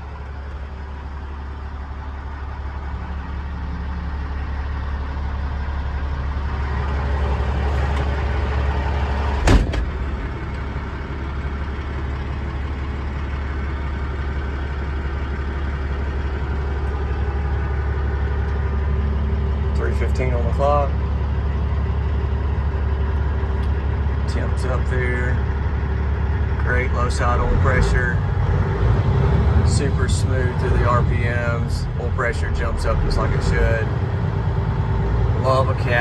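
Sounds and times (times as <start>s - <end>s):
diesel engine idling: 0.0s - 36.0s
sharp knock: 9.4s - 10.0s.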